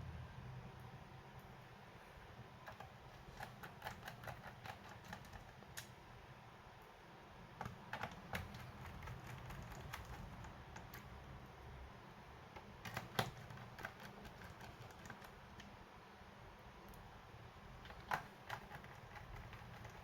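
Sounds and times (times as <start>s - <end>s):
laptop keyboard clicks: 7.6s - 11.1s, 12.6s - 15.7s.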